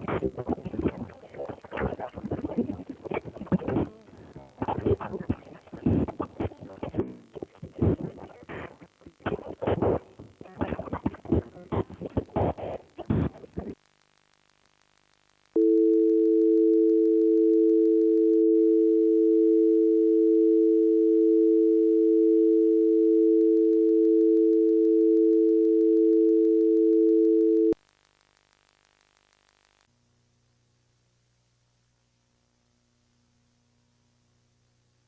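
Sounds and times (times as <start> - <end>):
telephone dial tone: 15.6 - 27.8.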